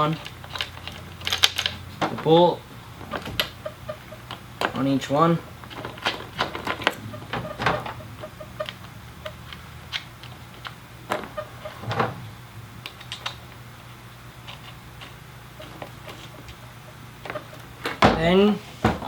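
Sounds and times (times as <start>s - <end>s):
low steady hum: 0.0s - 19.0s
knocks: 17.9s - 19.0s.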